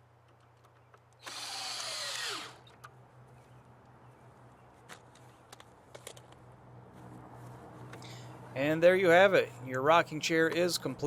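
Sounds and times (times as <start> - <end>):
power drill whining: 1.2 - 2.7.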